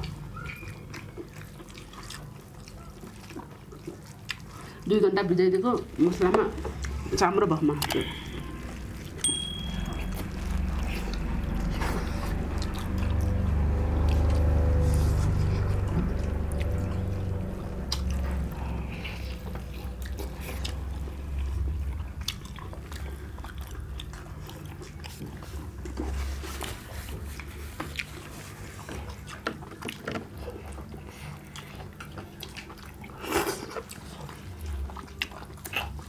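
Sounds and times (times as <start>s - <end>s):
chewing and biting food: 0.0s - 36.0s
low rumble: 5.9s - 26.0s.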